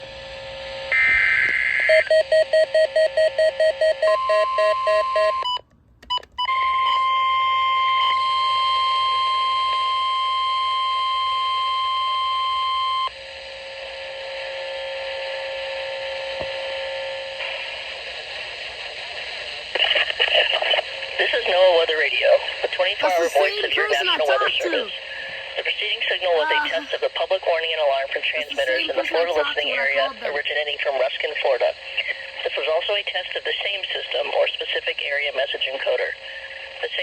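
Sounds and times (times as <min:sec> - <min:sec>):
radio hiss: 0:17.4 - 0:37.0
data burst: 0:23.0 - 0:25.3.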